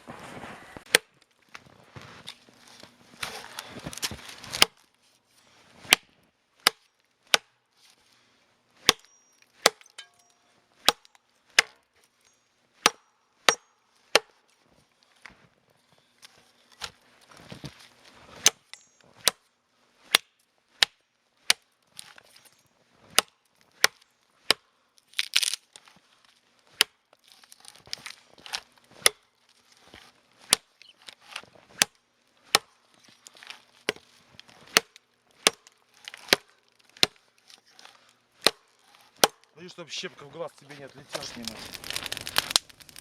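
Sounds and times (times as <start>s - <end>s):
blade chopping wood: 0.9s - 1.1s, 3.2s - 4.8s, 5.8s - 7.5s, 8.8s - 10.2s, 10.8s - 11.8s, 12.8s - 14.4s, 18.4s - 19.4s, 23.1s - 24.6s, 26.7s - 27.0s, 27.7s - 29.2s, 29.8s - 37.2s, 37.8s - 39.6s
wood splintering crack: 23.2s - 25.9s, 26.7s - 39.6s, 40.6s - 43.0s.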